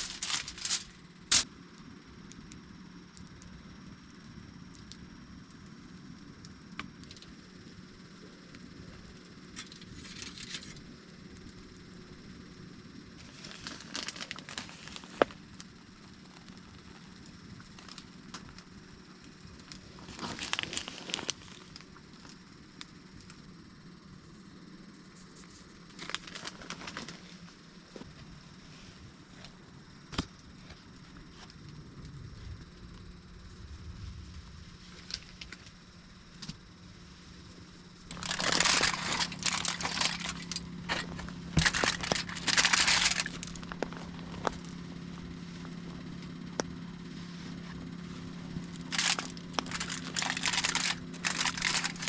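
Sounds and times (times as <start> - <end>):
plastic packaging crinkling: 0.0 - 1.4, 13.2 - 15.4, 20.0 - 21.8, 26.0 - 27.1, 38.1 - 45.9, 48.3 - 52.0
small clicks and ticks: 0.0 - 7.6, 38.1 - 44.8, 48.7 - 52.0.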